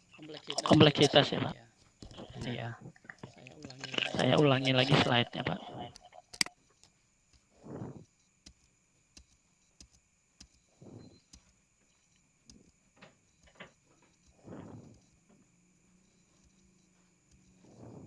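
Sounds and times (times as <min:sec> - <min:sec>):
computer mouse clicks: 0:08.1 - 0:12.8.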